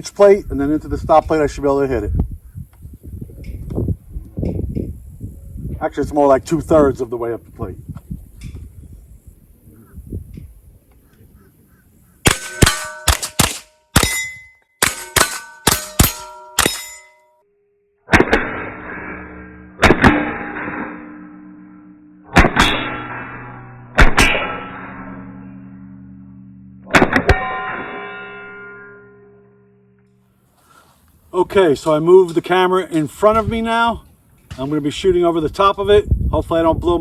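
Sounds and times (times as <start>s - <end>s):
rifle shots: 12.2s - 17.1s, 18.1s - 25.7s, 26.8s - 27.6s
steel target plates ringing: 12.3s - 17.4s, 18.4s - 30.4s
loud struck chords: 18.1s - 30.4s.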